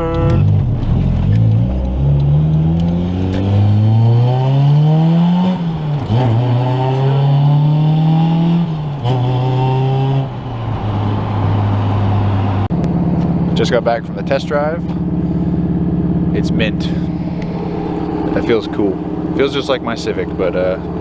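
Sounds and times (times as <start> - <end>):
car engine accelerating: 0.0 - 21.0.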